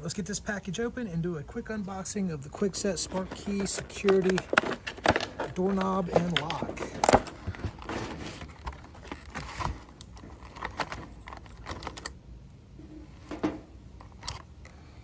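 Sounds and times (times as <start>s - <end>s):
packaging clicks and crinkles: 2.8s - 12.2s
packaging snapping: 2.9s - 12.2s.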